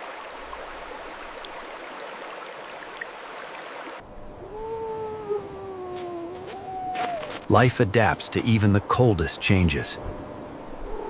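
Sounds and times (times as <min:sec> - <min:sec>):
running water rushing: 0:00.0 - 0:04.0
animal long falling call: 0:04.4 - 0:07.4.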